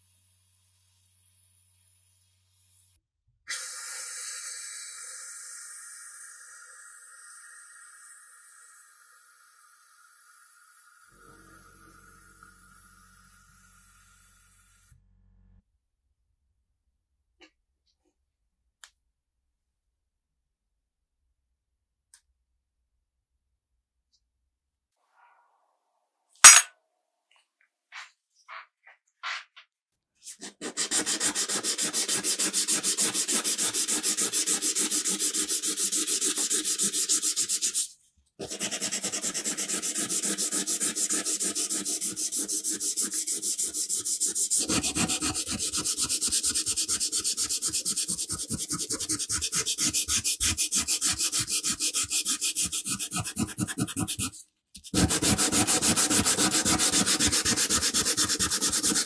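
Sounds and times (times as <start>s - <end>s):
sandpaper rubbing on metal: 30.3s - 59.0s.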